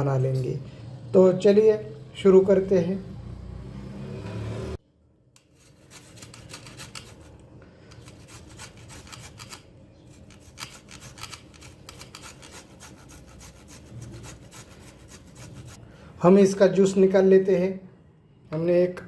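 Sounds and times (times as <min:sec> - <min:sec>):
ginger rasping on a grater: 0:05.6 - 0:15.8.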